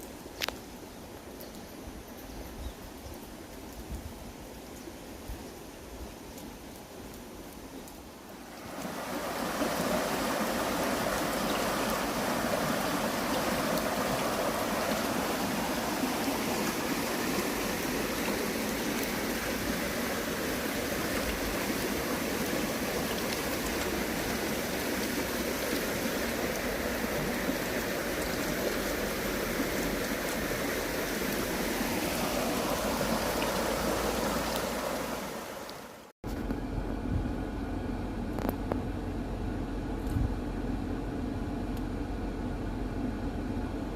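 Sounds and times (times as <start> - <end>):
heavy rain pouring: 6.6 - 36.1.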